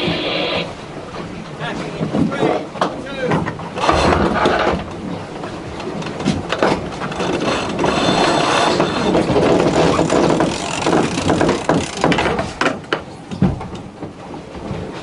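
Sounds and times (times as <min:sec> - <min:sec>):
water rushing: 0:00.0 - 0:12.2
wind: 0:00.0 - 0:15.0
deck gear clicks and knocks: 0:05.8 - 0:14.2.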